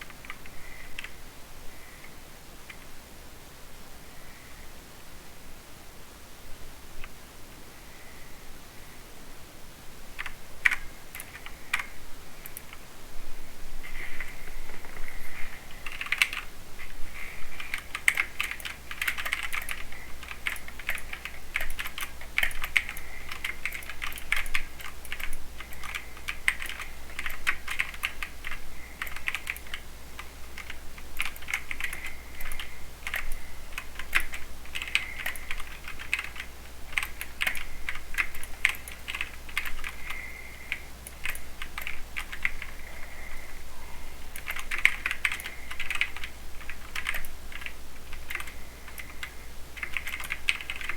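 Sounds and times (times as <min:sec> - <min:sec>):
mechanical keyboard typing: 0:10.2 - 0:12.8, 0:15.8 - 0:16.5, 0:17.6 - 0:42.8, 0:44.3 - 0:50.9.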